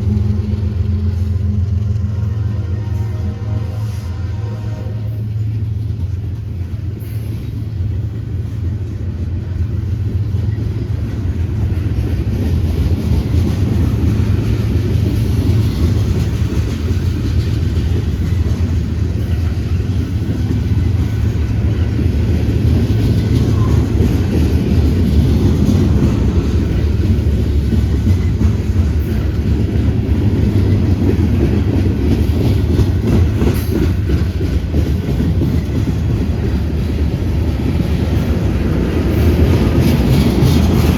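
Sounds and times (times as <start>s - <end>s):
freight train rumbling on rails: 0.0s - 40.9s.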